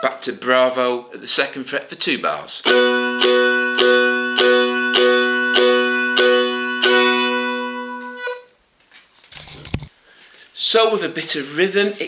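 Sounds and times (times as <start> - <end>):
dulcimer strums: 2.6 - 8.4
dulcimer drone: 2.7 - 8.4.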